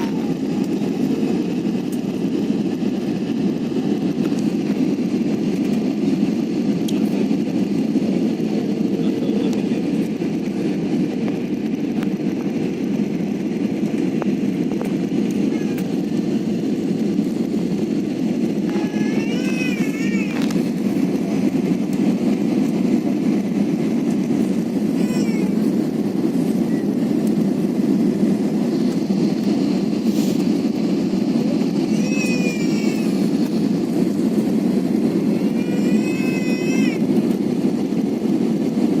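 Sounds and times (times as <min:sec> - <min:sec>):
airliner cabin roar: 0:00.0 - 0:39.0.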